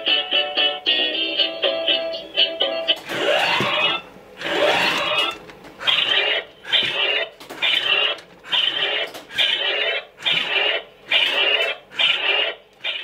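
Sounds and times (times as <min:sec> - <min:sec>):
toy robot electronic bursts: 0:03.1 - 0:13.0.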